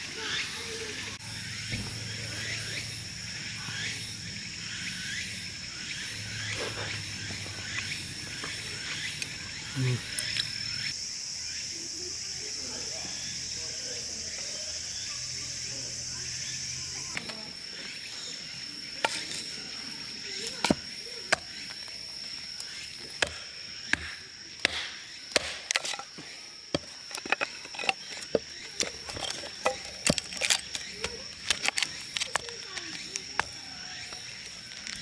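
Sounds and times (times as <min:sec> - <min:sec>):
insects trilling: 0:00.0 - 0:35.0
sharp clicks and knocks: 0:26.8 - 0:35.0.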